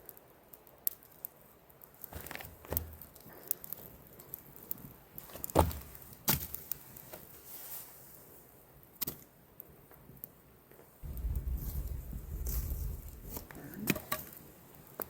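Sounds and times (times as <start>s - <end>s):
twigs and dry leaves snapping: 11.0s - 15.0s.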